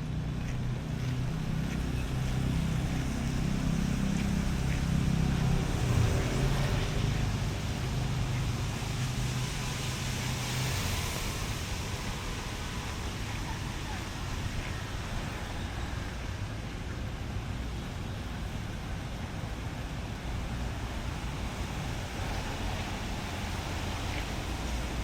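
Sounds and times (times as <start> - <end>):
vehicle engine passing: 0.0 - 12.8
rain and wet tyres hissing: 0.0 - 25.0.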